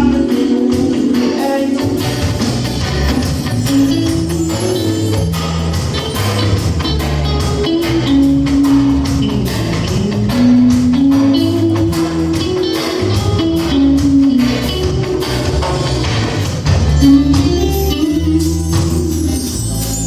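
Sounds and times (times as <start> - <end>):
bass notes: 0.0 - 20.0
guitar melody: 0.0 - 20.0
steady drum beat: 0.0 - 20.0.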